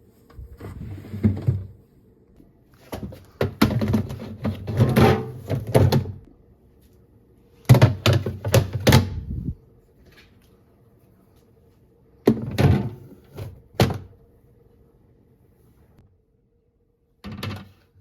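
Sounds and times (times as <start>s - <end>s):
household items knocking and clattering: 2.8s - 6.2s, 7.7s - 9.2s.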